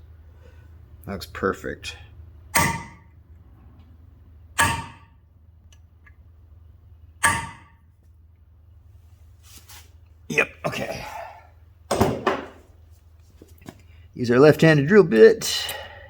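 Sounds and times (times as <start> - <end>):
hammer striking metal punch: 2.5 - 3.2, 4.6 - 5.2, 7.2 - 7.8.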